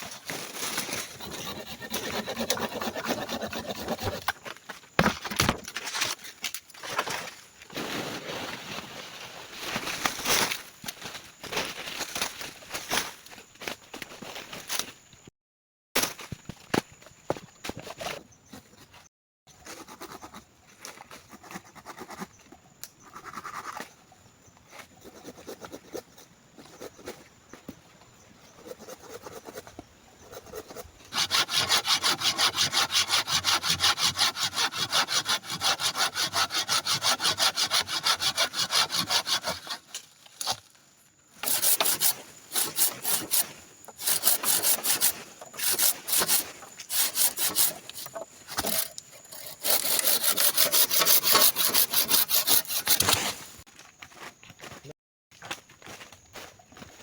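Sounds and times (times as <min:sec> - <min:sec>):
hand saw cutting wood: 0:00.0 - 0:04.5, 0:30.4 - 0:40.6, 0:41.4 - 0:53.6
wood scraping and knocking: 0:00.3 - 0:06.2, 0:41.4 - 0:53.4.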